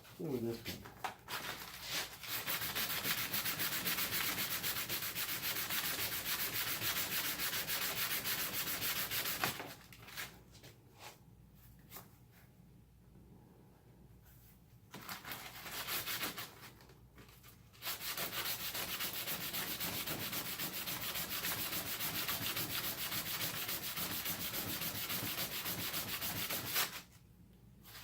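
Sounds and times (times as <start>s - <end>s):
sandpaper rubbing on metal: 1.8s - 9.5s, 17.8s - 27.0s.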